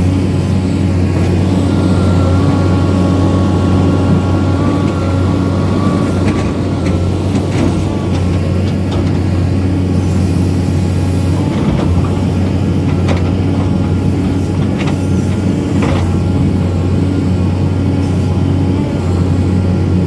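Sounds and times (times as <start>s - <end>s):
excavator diesel engine humming: 0.0s - 20.0s
machine knocks and clanks: 5.8s - 9.8s, 11.4s - 16.6s.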